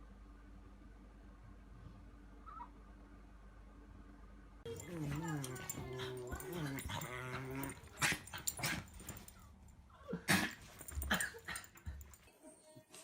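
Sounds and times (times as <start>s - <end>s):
dog whining: 4.7s - 9.2s.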